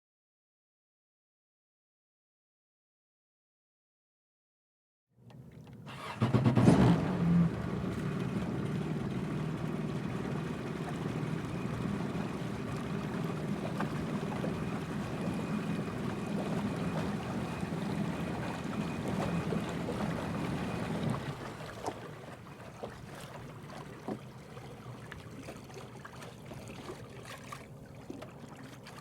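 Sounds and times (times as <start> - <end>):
watercraft engine starter cranking: 5.3 - 10.4
watercraft engine revving and idling: 5.3 - 29.0.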